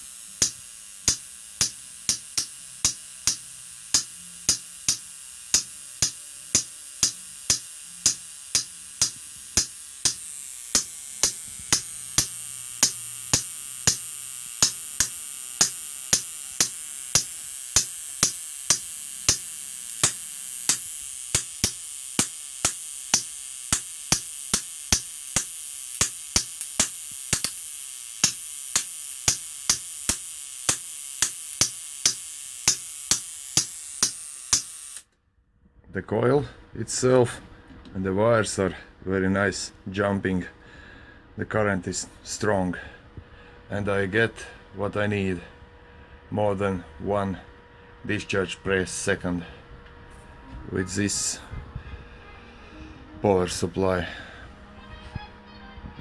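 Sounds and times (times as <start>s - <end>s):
high-voltage sparks snapping: 0.0s - 35.1s.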